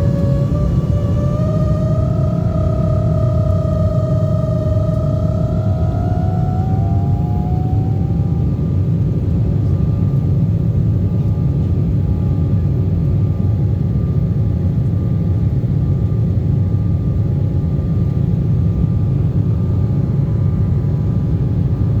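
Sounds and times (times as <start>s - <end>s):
steady whining tones: 0.0s - 10.3s
rising whine: 0.0s - 10.4s
jet engine and airflow rumble: 0.0s - 22.0s.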